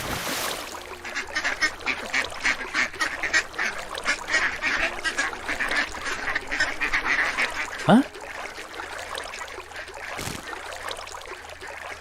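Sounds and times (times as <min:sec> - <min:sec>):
short animal calls: 0:07.9 - 0:08.1.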